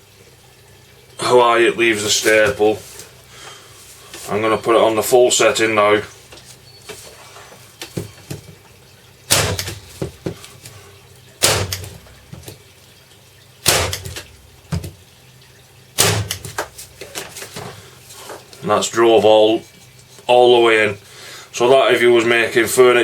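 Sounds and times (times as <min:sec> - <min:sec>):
electric stapler snapping: 0:09.3 - 0:09.8, 0:11.4 - 0:11.9, 0:13.7 - 0:14.2.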